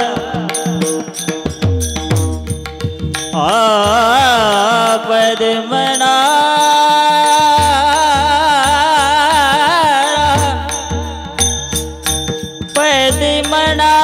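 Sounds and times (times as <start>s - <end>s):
person singing wordless line: 0.0s - 0.9s
harmonium-like held tones: 0.0s - 14.0s.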